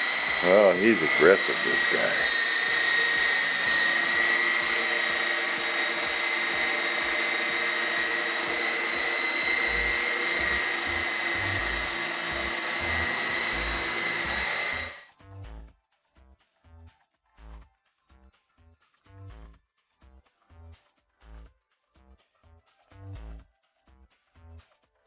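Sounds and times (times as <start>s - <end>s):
electric motors whining: 0.0s - 15.0s
rotors hissing: 0.0s - 15.0s.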